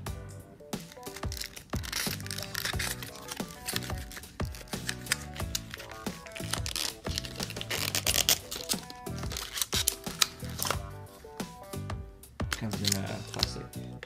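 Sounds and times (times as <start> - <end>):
background music with a beat: 0.0 - 14.0
plastic packaging crinkling: 0.9 - 10.8, 12.5 - 13.6.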